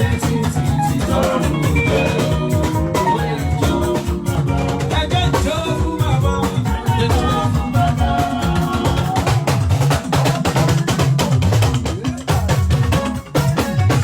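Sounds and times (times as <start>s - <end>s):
gliding pitched notes: 0.0s - 10.0s
band music with drums and guitar: 0.0s - 14.0s.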